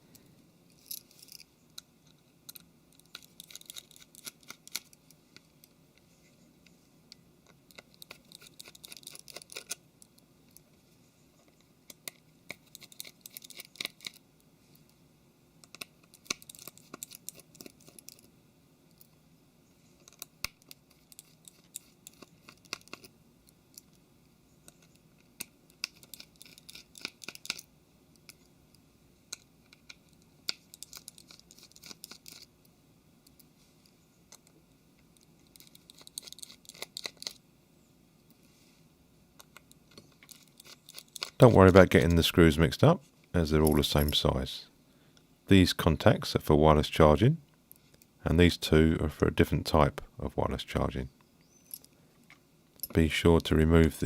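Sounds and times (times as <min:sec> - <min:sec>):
screwdriver clicking and scratching: 0:02.5 - 0:05.5, 0:07.7 - 0:09.8, 0:11.9 - 0:14.2, 0:15.6 - 0:18.3, 0:20.0 - 0:23.1, 0:24.6 - 0:28.4, 0:29.3 - 0:32.5, 0:35.2 - 0:37.4, 0:39.4 - 0:42.0.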